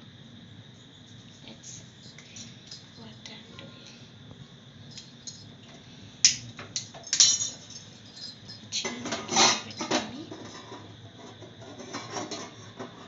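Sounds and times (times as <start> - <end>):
metal pan clinking and clattering: 7.0 - 10.6.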